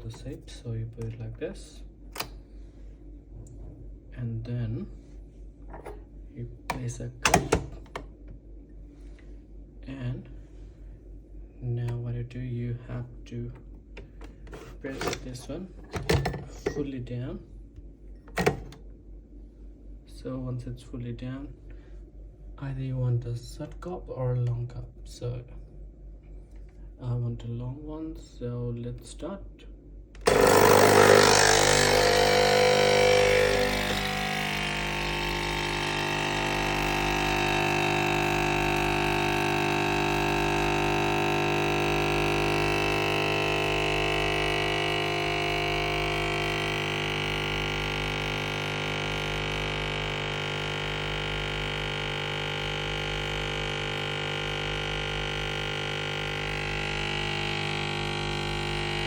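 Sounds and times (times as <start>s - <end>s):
coffee machine pump buzzing: 6.7s - 8.0s, 14.0s - 16.8s, 18.3s - 18.8s, 30.2s - 59.0s.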